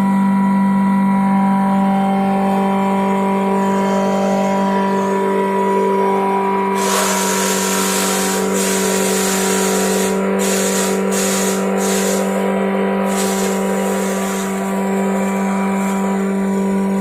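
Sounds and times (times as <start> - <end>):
shredder humming: 0.0 - 17.0
hissing noise: 6.8 - 17.0.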